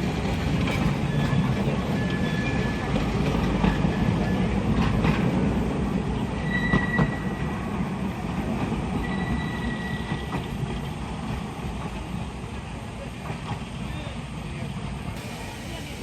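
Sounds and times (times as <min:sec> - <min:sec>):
wheels clacking on rails: 0:00.0 - 0:15.3
train rumbling along track: 0:00.0 - 0:16.0
thin wheel squeal: 0:09.0 - 0:10.2.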